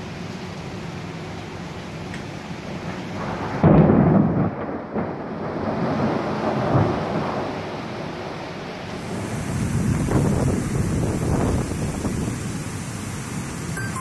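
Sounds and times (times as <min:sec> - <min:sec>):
heavy rain: 0:00.0 - 0:14.0
thunder clap rumbling: 0:02.8 - 0:13.2.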